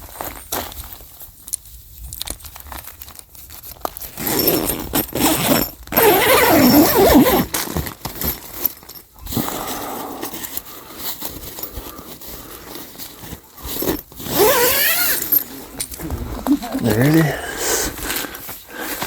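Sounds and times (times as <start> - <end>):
nylon and plastic tarp rustling: 2.3 - 19.0.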